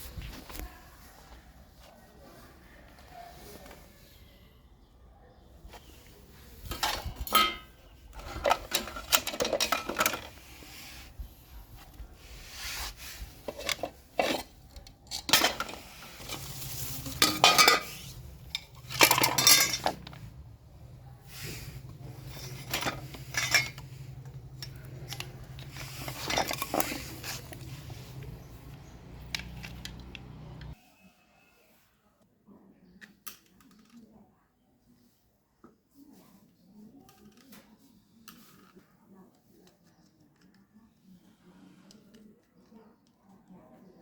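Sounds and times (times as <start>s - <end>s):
small hard objects clinking: 6.7s - 10.4s, 13.4s - 20.4s, 22.0s - 28.5s.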